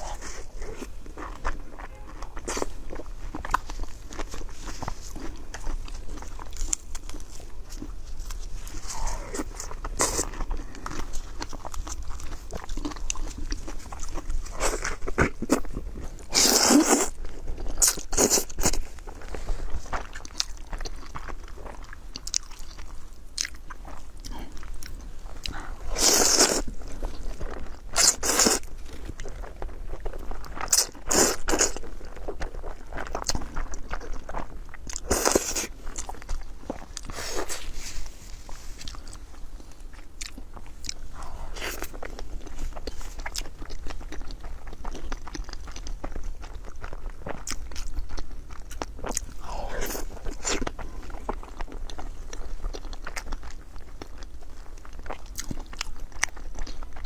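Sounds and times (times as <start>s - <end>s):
person eating crunchy food: 0.0s - 57.0s.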